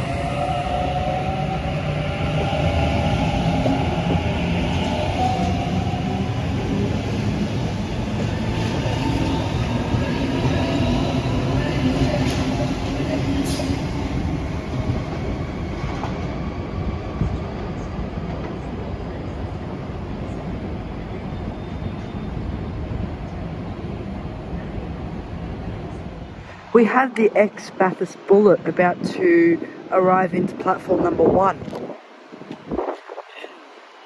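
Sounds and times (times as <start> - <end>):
passenger train on rails: 0.0 - 34.0.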